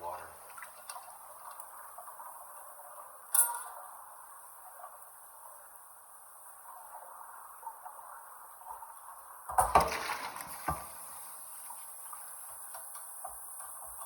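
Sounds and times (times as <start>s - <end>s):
running water: 0.0s - 14.0s
cast iron pot clunking: 3.3s - 3.8s.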